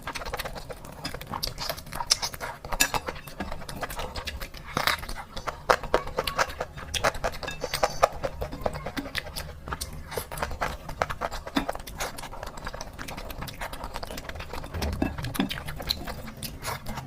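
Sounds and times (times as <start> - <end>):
chewing and mouth smacking: 0.0 - 17.0
utensil clinking against dish: 2.1 - 9.9.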